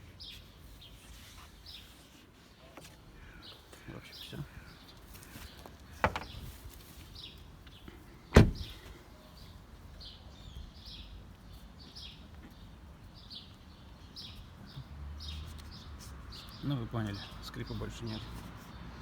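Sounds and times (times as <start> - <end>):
birds chirping: 3.2 - 6.6, 7.2 - 11.2
car door shutting: 6.0 - 6.4, 8.3 - 8.9.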